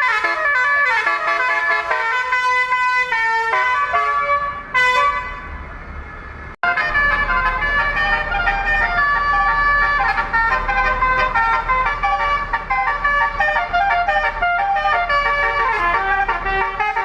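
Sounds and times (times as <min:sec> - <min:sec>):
bus multi-tone horn melody: 0:00.0 - 0:05.6, 0:06.2 - 0:17.0
steady low rumble: 0:05.5 - 0:17.0.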